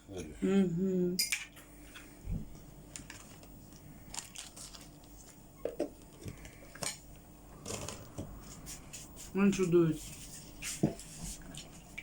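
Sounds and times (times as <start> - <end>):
faint steady hum: 0.0 - 12.0
soft crinkly noises: 2.9 - 6.6.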